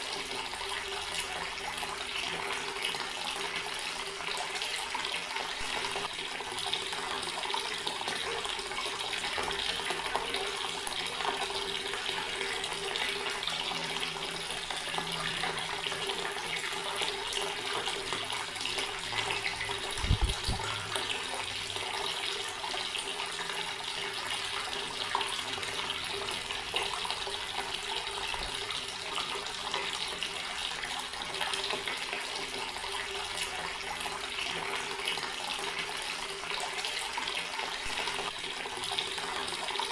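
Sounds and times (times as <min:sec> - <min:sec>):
water running from outdoor tap: 0:00.0 - 0:39.9.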